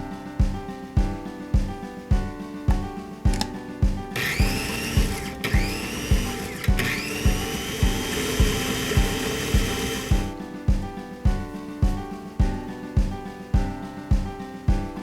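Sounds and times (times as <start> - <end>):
background music with beat: 0.0 - 15.0
blender motor whirring: 4.2 - 10.3.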